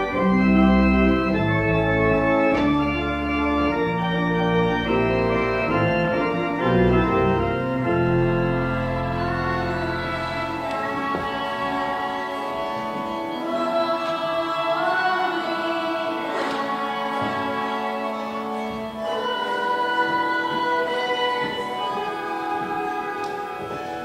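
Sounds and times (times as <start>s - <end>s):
instrumental accompaniment: 0.0s - 24.0s
choir singing: 8.2s - 24.0s.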